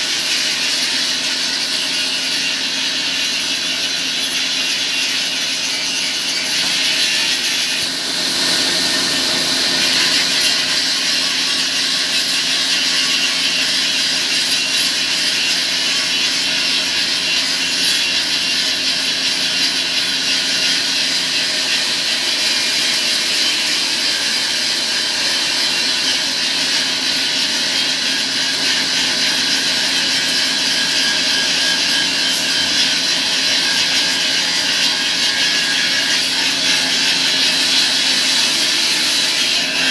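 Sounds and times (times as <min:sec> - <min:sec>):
saw cutting wood: 0:00.0 - 0:39.9.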